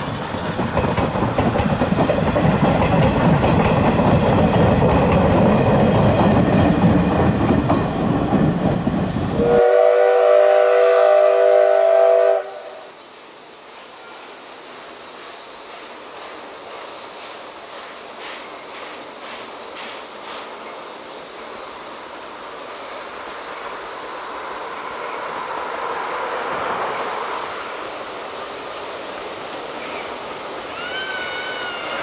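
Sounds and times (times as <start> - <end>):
train wheels clattering: 0.0 - 9.6, 15.7 - 20.8
steady high hiss: 0.0 - 32.0
steam whistle chord: 9.1 - 12.9.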